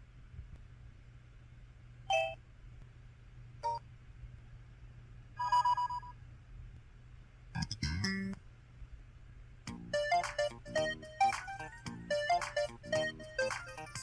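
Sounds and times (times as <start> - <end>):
chord of electronic tones: 9.8 - 14.0.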